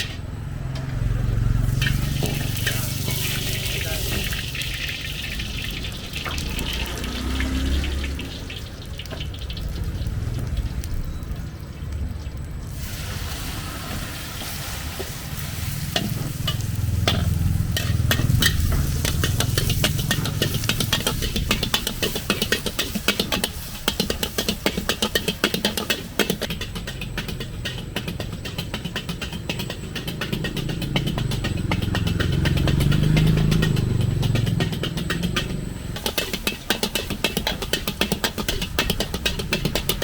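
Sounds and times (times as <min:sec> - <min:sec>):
metal spatula scraping a pan: 0:00.0 - 0:00.3, 0:01.6 - 0:04.4, 0:13.9 - 0:30.6, 0:36.0 - 0:40.0
food sizzling in a wok: 0:01.3 - 0:11.2, 0:12.6 - 0:40.0.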